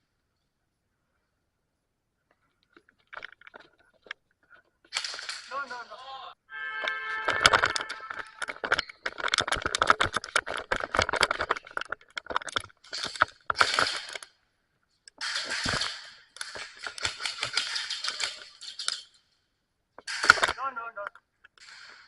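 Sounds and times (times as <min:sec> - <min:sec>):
airsoft guns firing: 0:15.2 - 0:18.6, 0:20.0 - 0:20.6.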